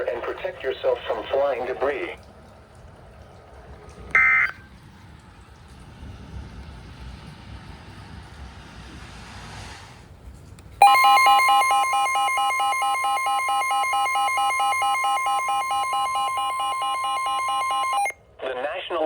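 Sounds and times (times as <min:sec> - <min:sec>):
fast pulsing beep: 0:10.8 - 0:18.2
loud steady alarm tone: 0:10.8 - 0:18.2.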